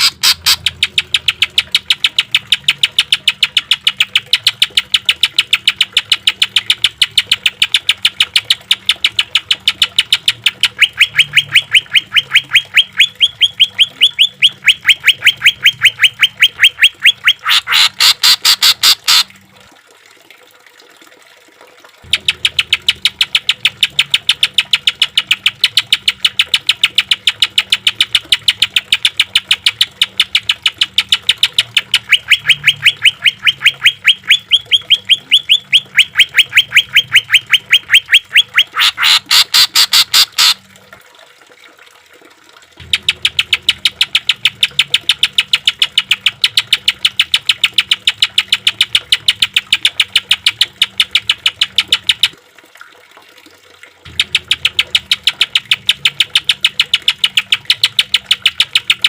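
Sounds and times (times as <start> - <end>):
bird singing rapid sharp notes: 0.0 - 19.3, 22.0 - 40.6.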